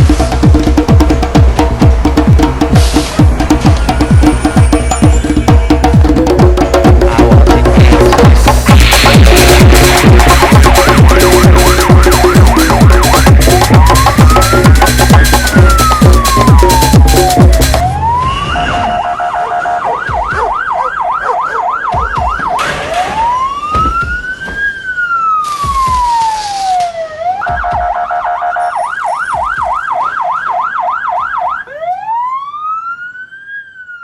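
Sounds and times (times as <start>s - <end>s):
emergency siren wail and yelp: 8.7s - 34.0s.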